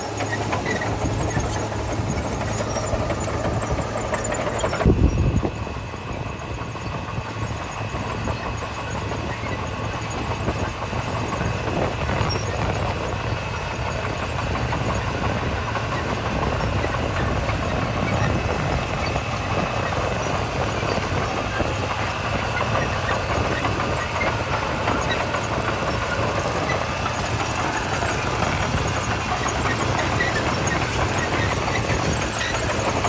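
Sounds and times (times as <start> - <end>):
heavy diesel machinery running: 0.0 - 33.0.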